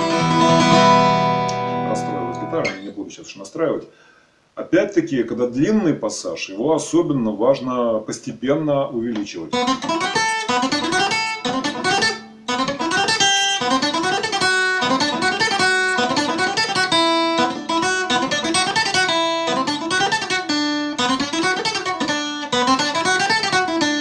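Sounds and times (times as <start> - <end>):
acoustic guitar plucked notes: 0.0 - 3.0, 9.2 - 24.0.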